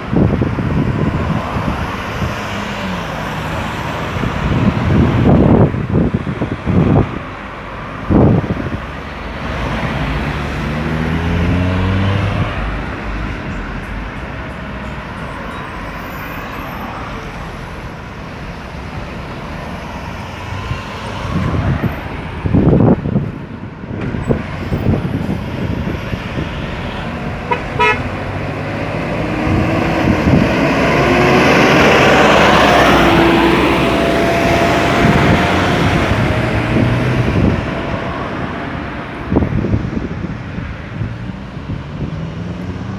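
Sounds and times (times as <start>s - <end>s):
cars and trucks accelerating: 0.0s - 42.9s
car horn tooting: 27.4s - 28.1s.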